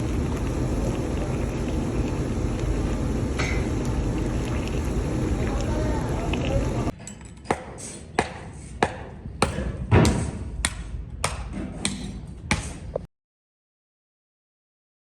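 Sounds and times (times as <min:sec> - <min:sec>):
low background hum: 0:00.0 - 0:07.4.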